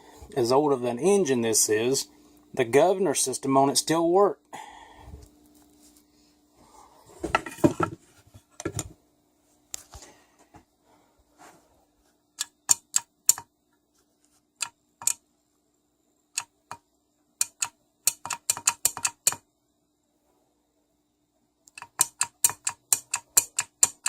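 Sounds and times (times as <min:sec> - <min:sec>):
small engine parts clicking: 0:17.4 - 0:19.4, 0:21.7 - 0:24.0.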